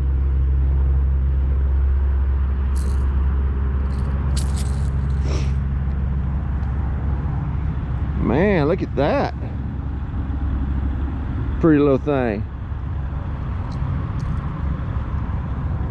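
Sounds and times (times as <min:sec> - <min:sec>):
motor vehicle rumble: 0:00.0 - 0:11.6, 0:12.4 - 0:15.9
sharp clicks and rattles: 0:02.8 - 0:03.2, 0:03.8 - 0:05.5.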